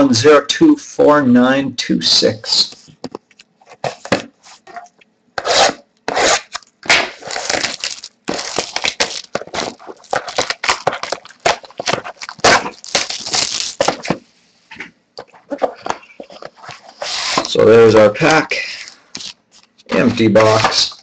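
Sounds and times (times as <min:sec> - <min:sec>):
cardboard and wrapping scraping: 0:03.6 - 0:14.2, 0:15.5 - 0:17.6, 0:19.2 - 0:21.0.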